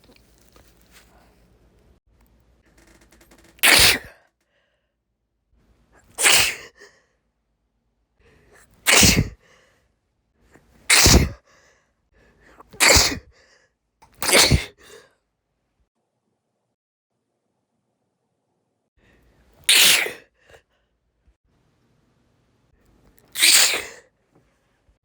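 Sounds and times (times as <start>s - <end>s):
woman sneezing: 3.6s - 4.2s, 6.1s - 6.8s, 8.8s - 9.4s, 10.9s - 11.4s, 12.6s - 13.3s, 14.2s - 14.9s, 19.7s - 20.3s, 23.4s - 24.0s
faint breath in: 9.4s - 10.0s, 11.4s - 12.6s, 13.3s - 13.8s.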